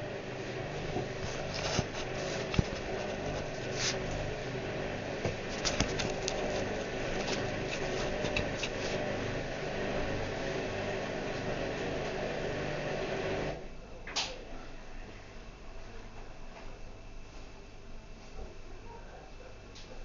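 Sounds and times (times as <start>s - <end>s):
washing machine humming: 0.0s - 20.0s.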